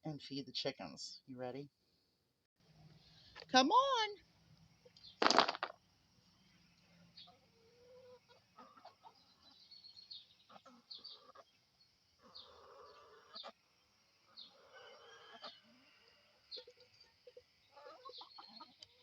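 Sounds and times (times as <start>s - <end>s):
chickens clucking: 7.2s - 19.0s.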